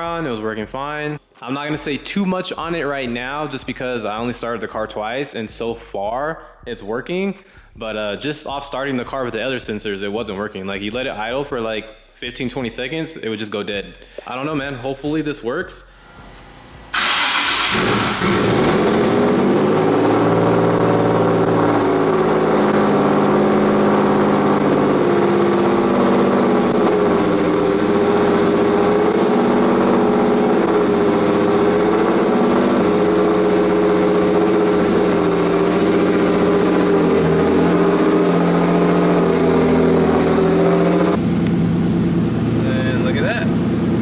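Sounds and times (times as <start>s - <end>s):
car engine starting and idling: 15.8s - 44.0s.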